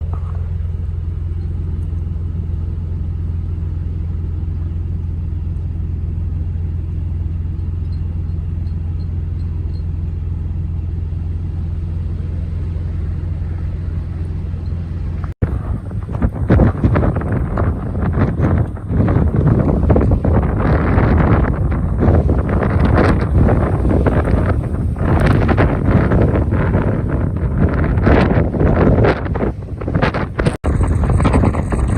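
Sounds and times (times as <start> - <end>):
vehicle engine rumble: 0.0 - 31.9
blizzard wind buffeting microphone: 10.5 - 31.9.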